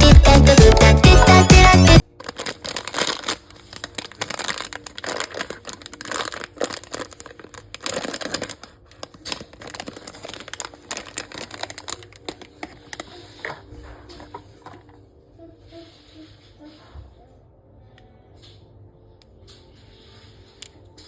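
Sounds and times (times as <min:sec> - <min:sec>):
packaging crinkling and rustling: 0:02.0 - 0:14.9
packaging tearing: 0:02.2 - 0:13.5.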